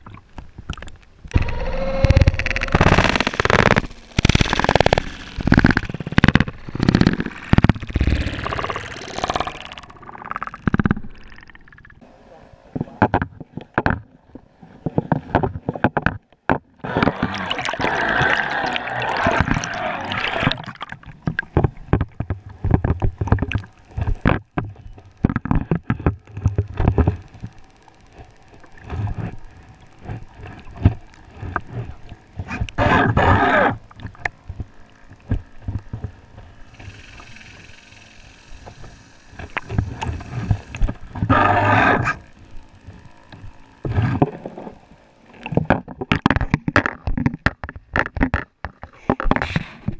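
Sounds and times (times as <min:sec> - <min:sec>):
water sloshing and splashing: 0:17.0 - 0:27.6.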